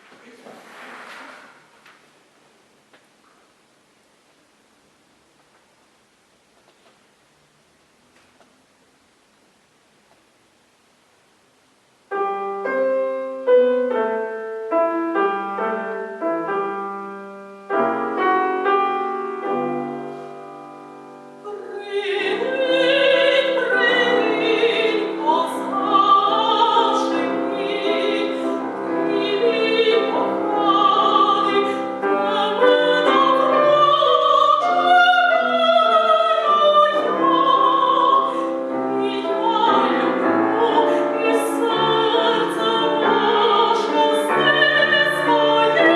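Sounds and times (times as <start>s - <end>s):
piano chords: 12.1s - 45.9s
soprano singing opera aria: 17.8s - 45.9s.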